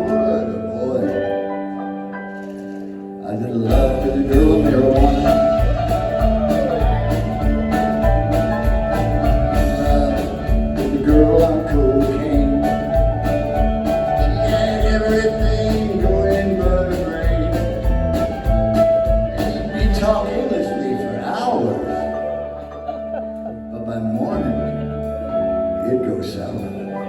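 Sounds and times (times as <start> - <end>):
electric guitars: 0.0 - 27.0
drums keeping a steady beat: 3.7 - 20.8.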